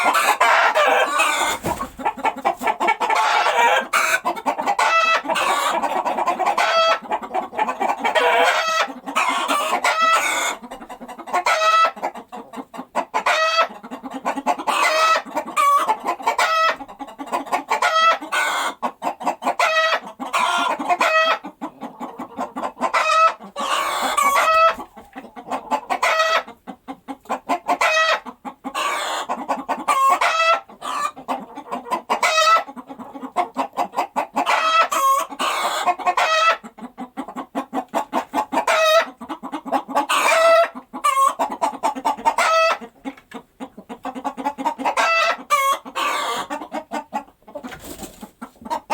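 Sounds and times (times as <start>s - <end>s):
hens clucking: 0.0s - 48.9s.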